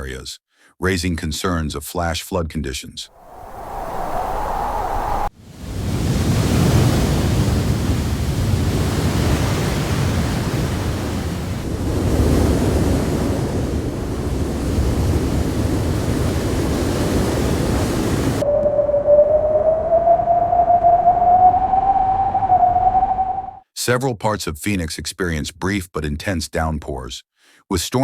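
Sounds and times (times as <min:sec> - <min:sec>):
wind: 0:03.1 - 0:23.5
wind buffeting microphone: 0:03.1 - 0:23.5
heavy rain: 0:10.0 - 0:18.4
rising electronic tone: 0:18.4 - 0:23.6.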